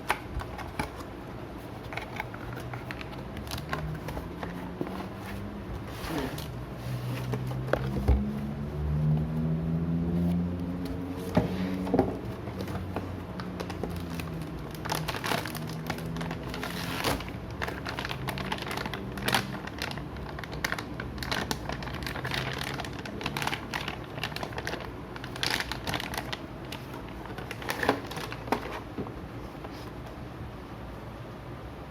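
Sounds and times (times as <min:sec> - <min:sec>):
plastic packaging crinkling: 0:00.0 - 0:06.6, 0:11.2 - 0:28.9.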